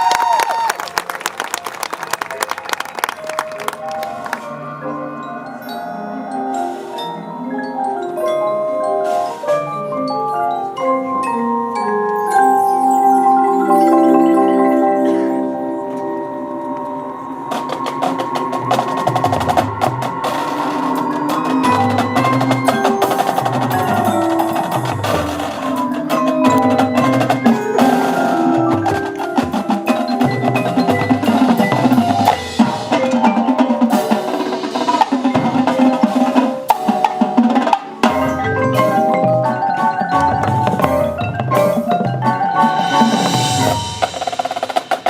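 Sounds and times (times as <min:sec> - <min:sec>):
marching band playing: 0:02.2 - 0:45.0
marimba and glockenspiel: 0:03.1 - 0:45.0
snare drums: 0:17.6 - 0:39.6, 0:40.2 - 0:45.0.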